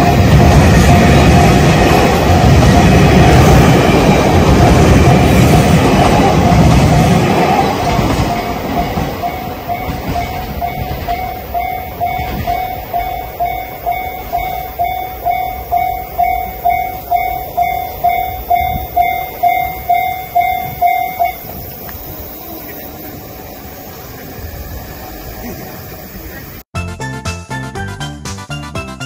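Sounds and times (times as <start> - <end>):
passing train: 0.0 - 26.7
level crossing bell ringing: 4.6 - 21.6.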